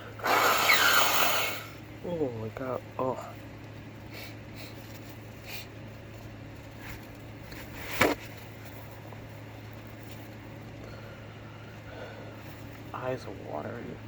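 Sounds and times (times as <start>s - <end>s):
low steady hum: 0.0s - 14.0s
short breaths: 10.8s - 12.5s.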